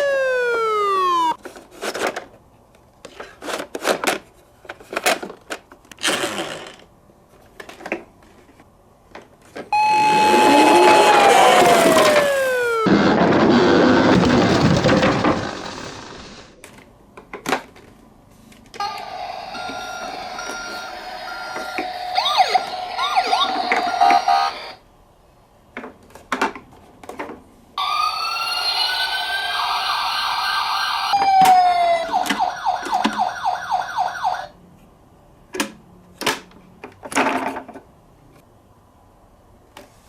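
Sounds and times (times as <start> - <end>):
fast siren yelp: 0.0 - 1.4, 9.8 - 13.2, 22.1 - 23.7, 27.8 - 34.5
wailing emergency sirens: 0.0 - 1.4, 9.8 - 13.9, 18.9 - 24.6, 27.8 - 34.6.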